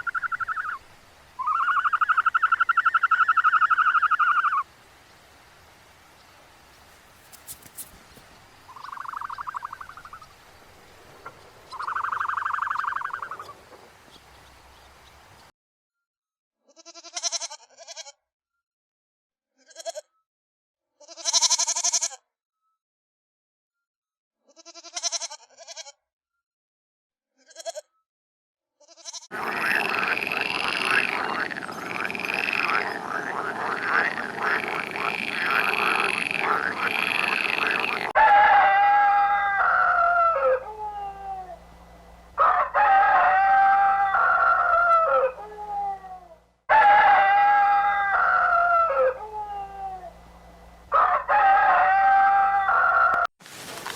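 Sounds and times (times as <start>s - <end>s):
animal calls: 0.0s - 0.8s, 1.4s - 4.7s, 6.8s - 10.3s, 11.7s - 13.6s, 29.3s - 53.3s
chorus of many animal calls: 0.0s - 0.8s, 11.7s - 13.6s, 29.3s - 50.3s, 50.9s - 53.3s.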